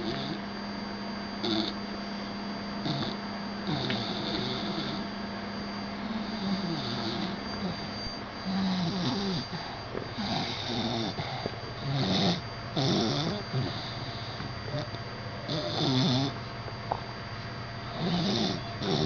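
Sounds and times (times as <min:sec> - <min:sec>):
dog snoring: 0:00.0 - 0:00.5, 0:01.4 - 0:01.8, 0:02.8 - 0:05.1, 0:06.0 - 0:16.4, 0:17.9 - 0:19.0.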